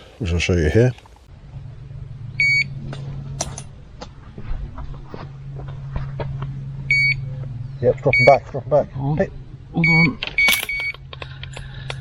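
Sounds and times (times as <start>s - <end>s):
steady low hum: 0.0s - 12.0s
bite alarm beeping: 1.7s - 3.3s, 6.5s - 8.5s, 9.4s - 11.1s.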